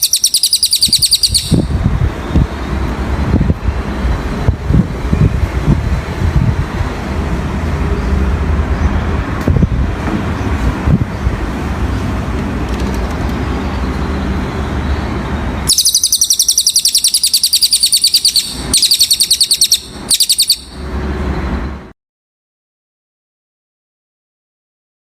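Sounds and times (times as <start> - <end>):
songbird high-pitched trill: 0.0 - 2.4, 14.8 - 20.8
low rumbling background noise: 0.9 - 15.8.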